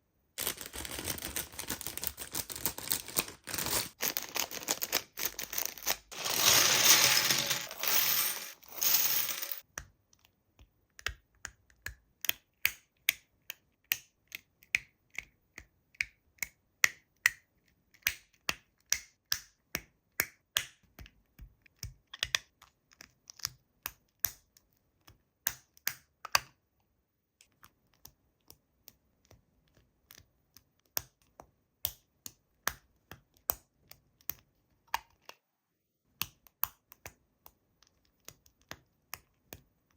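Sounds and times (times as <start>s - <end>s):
plastic pieces clicking: 0.4s - 9.6s.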